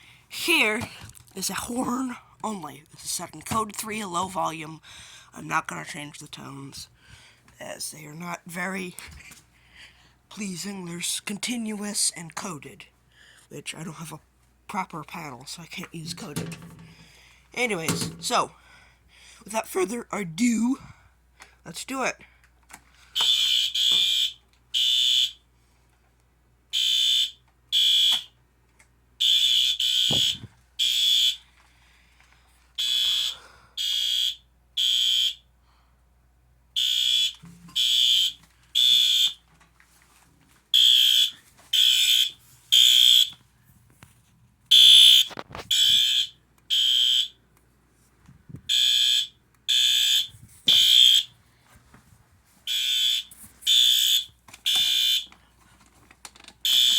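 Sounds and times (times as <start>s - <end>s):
fire alarm horn blasts: 23.2s - 25.4s, 26.7s - 28.3s, 29.2s - 31.4s, 32.8s - 35.5s, 36.8s - 39.4s, 40.8s - 43.3s, 44.7s - 47.4s, 48.7s - 51.3s, 52.7s - 55.3s, 56.6s - 56.9s.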